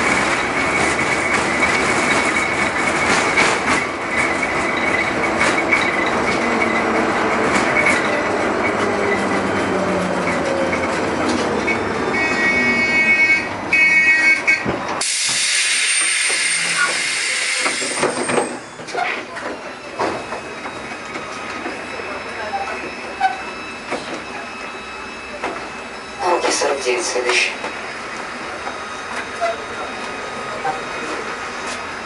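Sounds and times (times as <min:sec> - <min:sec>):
tram rolling on rails: 0:00.0 - 0:32.0
high wheel squeal: 0:00.2 - 0:10.9, 0:11.6 - 0:32.0
loud hiss of air: 0:15.0 - 0:18.1.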